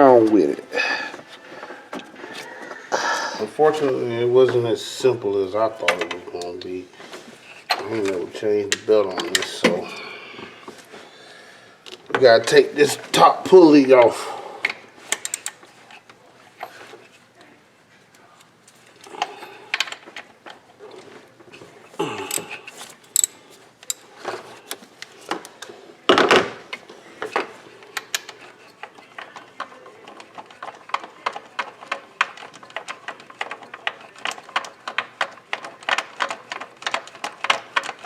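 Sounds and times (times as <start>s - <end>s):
hand ratchet clicking: 15.1s - 15.6s, 22.2s - 24.0s, 28.0s - 38.0s.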